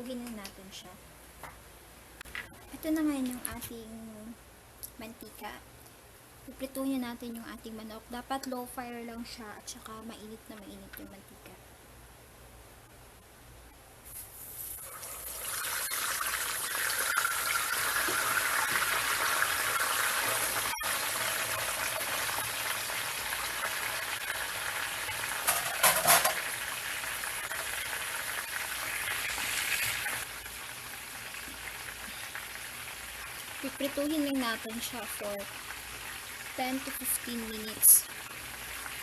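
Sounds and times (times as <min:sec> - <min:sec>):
chicken sizzling in hot oil: 0:14.4 - 0:39.0.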